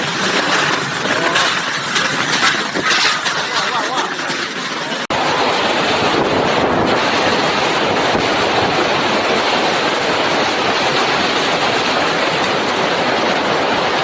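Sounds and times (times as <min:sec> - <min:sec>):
strong storm wind rushing: 0:05.0 - 0:14.0.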